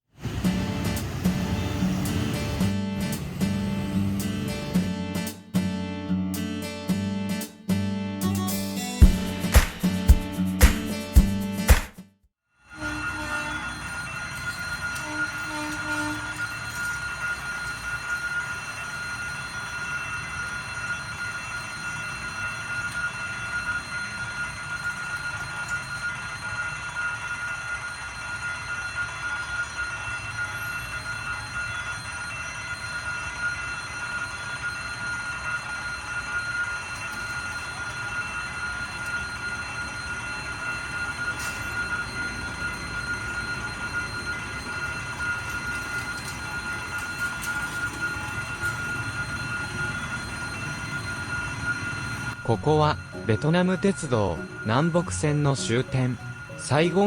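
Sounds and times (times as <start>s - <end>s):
train low rumble: 0.2s - 5.3s, 38.8s - 57.0s
high-pitched tone: 8.2s - 11.7s, 12.8s - 57.0s.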